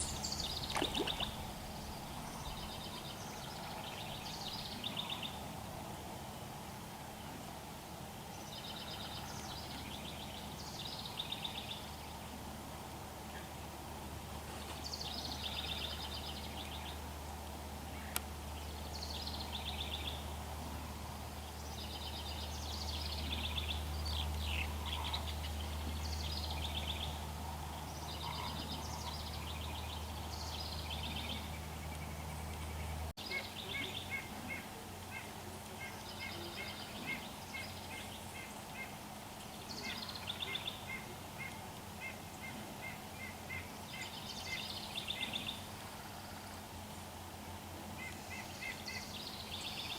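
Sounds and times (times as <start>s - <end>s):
songbirds singing trilled phrases: 0.0s - 5.4s
steady low rumble: 0.0s - 44.2s.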